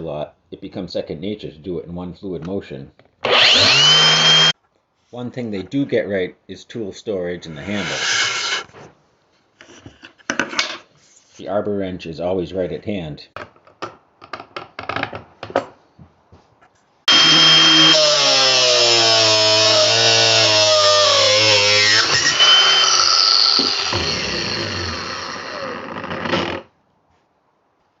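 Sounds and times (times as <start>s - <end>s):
angle grinder whining: 3.2s - 4.6s, 7.6s - 8.7s, 17.1s - 26.7s.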